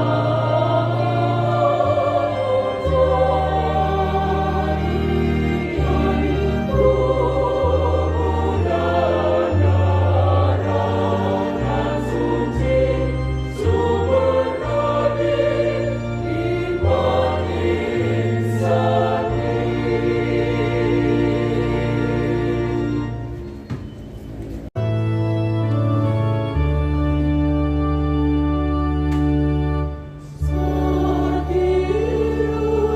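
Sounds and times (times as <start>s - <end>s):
choir singing: 0.0s - 23.6s, 30.2s - 32.9s
held organ bass notes: 0.0s - 32.9s.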